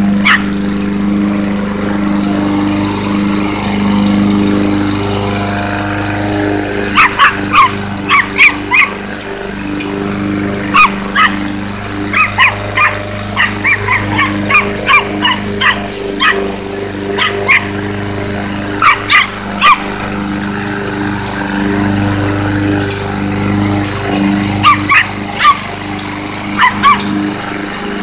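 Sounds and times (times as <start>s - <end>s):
lawnmower running: 0.0s - 28.0s
small dog yapping: 0.2s - 0.5s, 7.0s - 8.9s, 10.8s - 11.4s, 12.1s - 16.4s, 17.2s - 17.6s, 18.8s - 19.8s, 24.6s - 25.6s, 26.6s - 27.1s.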